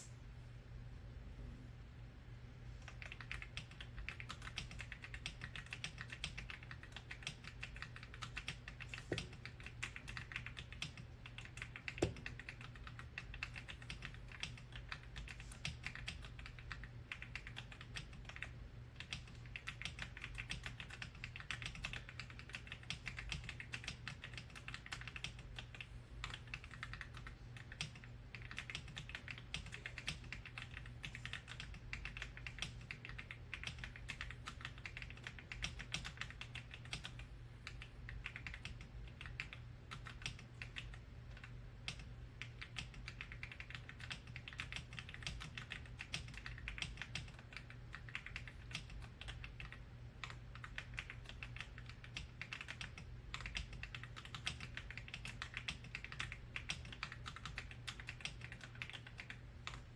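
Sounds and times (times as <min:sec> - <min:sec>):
low steady hum: 0:00.0 - 0:59.9
mechanical keyboard typing: 0:02.9 - 0:59.9.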